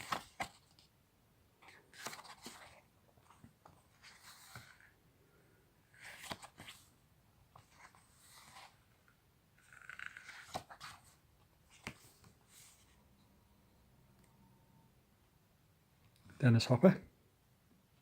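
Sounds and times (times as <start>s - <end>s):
paper pages rustling: 0.0s - 0.9s, 1.6s - 4.9s, 5.9s - 6.9s, 7.5s - 8.9s, 9.6s - 13.0s.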